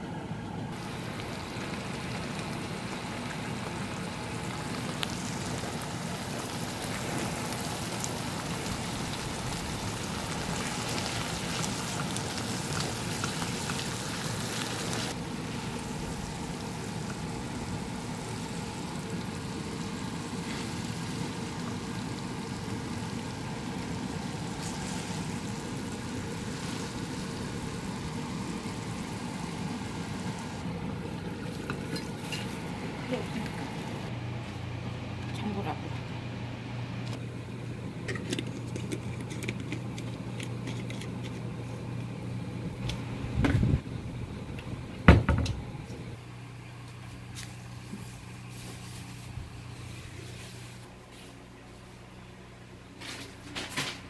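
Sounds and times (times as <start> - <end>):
food sizzling in frying pan: 0.8 - 30.6.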